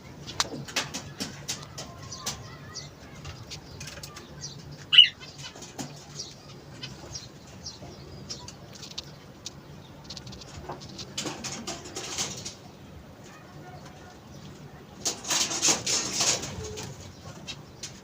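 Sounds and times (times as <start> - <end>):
cage birds chirping and calling: 0.0 - 18.0
loud sharp bird call: 4.9 - 5.4.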